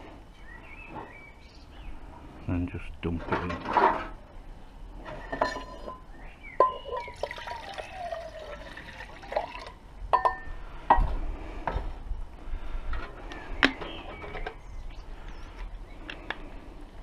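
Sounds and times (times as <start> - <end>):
water pouring and splashing: 7.0 - 9.8.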